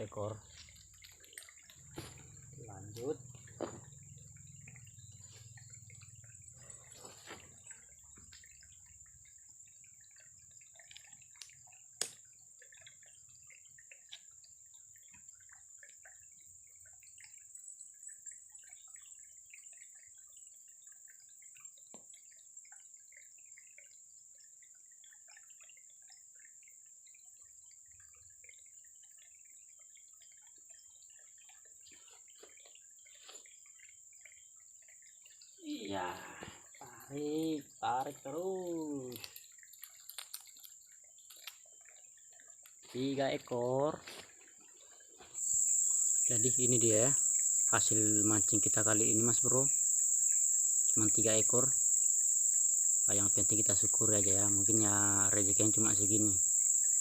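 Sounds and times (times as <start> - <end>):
water dripping and trickling: 0.0 - 57.0
small ticks: 0.2 - 57.0.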